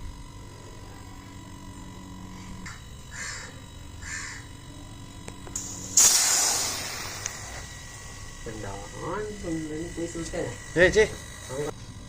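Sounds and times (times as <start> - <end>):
refrigerator compressor humming: 0.0 - 12.0
crow cawing: 3.1 - 4.5
loud hiss: 5.6 - 11.6.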